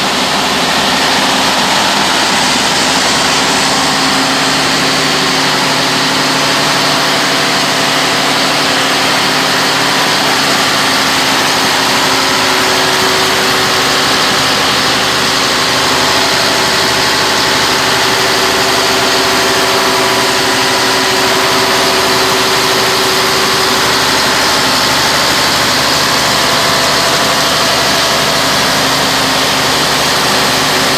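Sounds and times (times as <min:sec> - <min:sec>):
diesel generator engine humming: 0:00.0 - 0:30.9.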